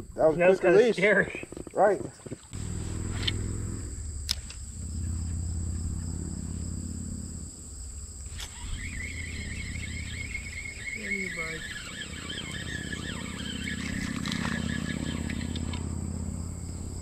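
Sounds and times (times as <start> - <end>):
low rumble: 2.6 - 8.2
high insect drone: 2.6 - 17.0
sharp clicks: 4.2 - 4.7, 12.4 - 15.9
wavering high chirping: 8.4 - 15.8.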